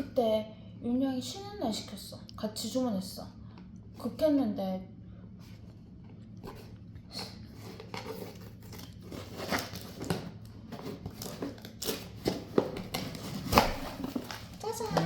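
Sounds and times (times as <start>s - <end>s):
packaging crinkling and ripping: 7.6s - 15.0s.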